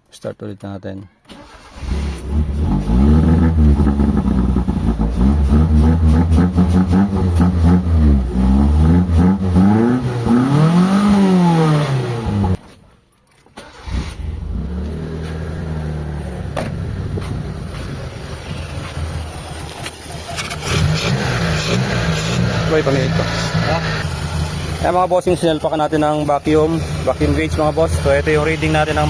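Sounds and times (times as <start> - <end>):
car engine revving: 1.4 - 12.6, 13.6 - 29.0
car engine idling: 13.6 - 29.0.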